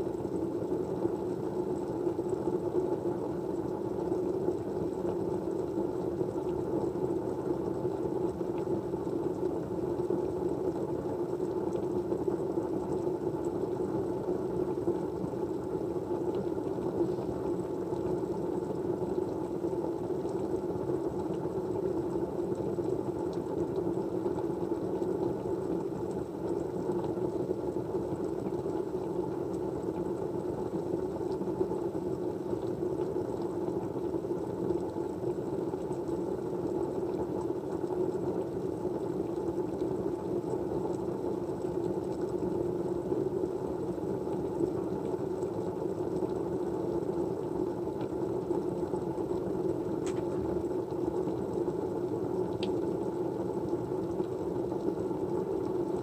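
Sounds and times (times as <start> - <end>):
low rumbling white noise: 0.0 - 56.0
faint ticks: 52.5 - 52.8.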